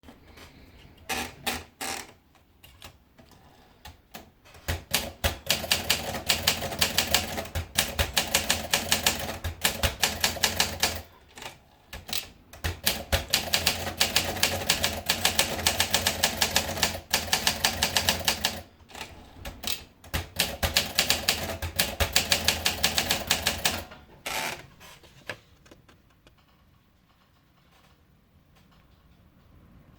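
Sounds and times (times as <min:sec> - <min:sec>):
manual typewriter typing: 0:01.0 - 0:24.6.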